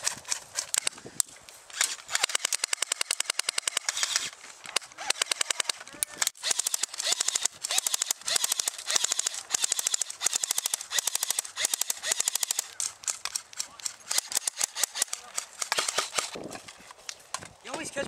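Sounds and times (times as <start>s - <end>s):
airsoft guns firing: 1.8s - 4.2s, 4.9s - 16.4s.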